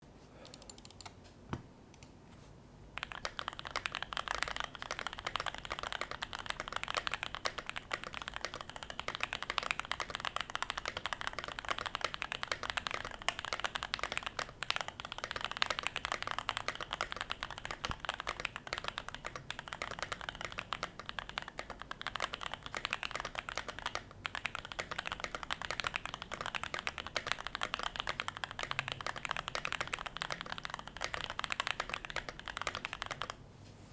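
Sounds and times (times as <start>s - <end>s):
fast mechanical keyboard typing: 3.0s - 33.4s.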